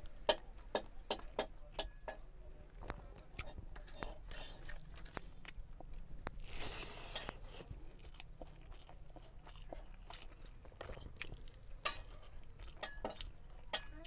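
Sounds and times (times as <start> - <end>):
person chewing food: 2.8 - 14.0.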